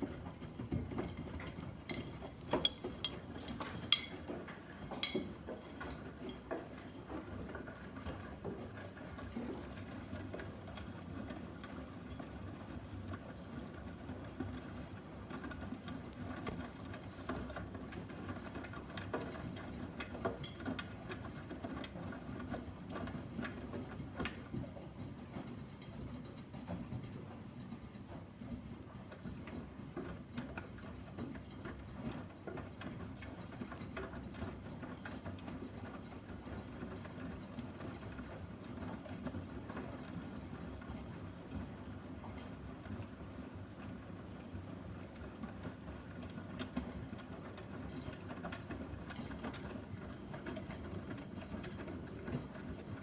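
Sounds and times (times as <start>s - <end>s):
small irregular clicks and knocks: 1.0s - 7.2s
washing machine drum turning: 1.9s - 6.8s.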